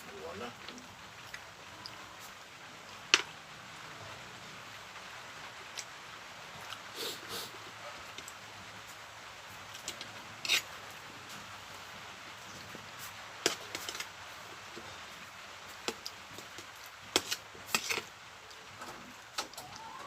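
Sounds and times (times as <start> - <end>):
steady low hiss: 0.0 - 20.0
person chewing with crunches: 1.2 - 2.3, 6.6 - 7.5.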